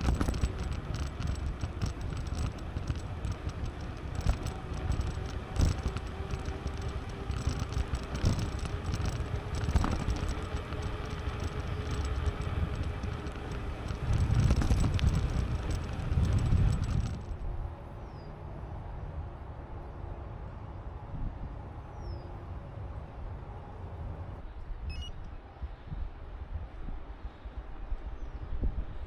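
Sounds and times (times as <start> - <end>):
bicycle tyre noise: 0.0 - 17.6
bike clicks and rattles: 0.0 - 17.6
wind on microphone: 0.0 - 17.8, 23.9 - 29.0.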